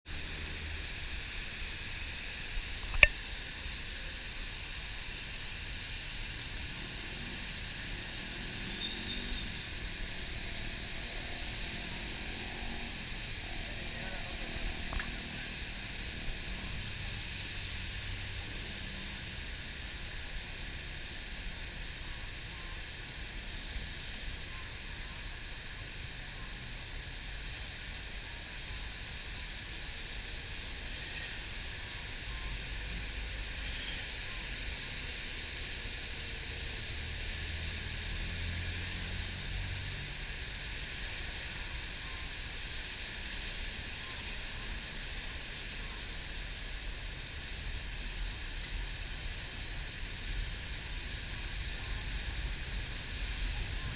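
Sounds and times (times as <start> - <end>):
rain and wet road hiss: 0.1 - 53.9
bus engine rumble: 34.4 - 53.9.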